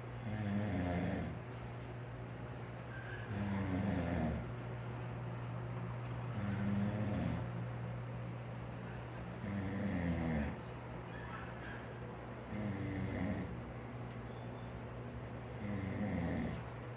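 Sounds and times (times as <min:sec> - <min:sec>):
steady low hum: 0:00.0 - 0:16.9
man snoring: 0:00.2 - 0:01.4, 0:03.3 - 0:04.5, 0:06.4 - 0:07.5, 0:09.4 - 0:10.6, 0:12.5 - 0:13.6, 0:15.6 - 0:16.6.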